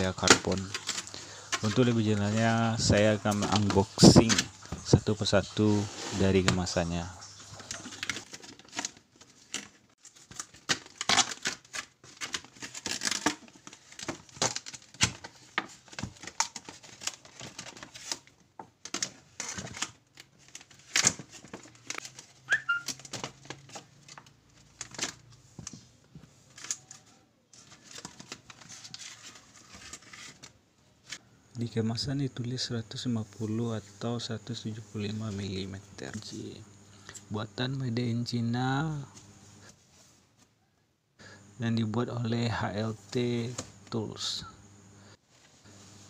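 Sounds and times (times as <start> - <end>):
packaging crinkling and tearing: 7.4 - 25.3.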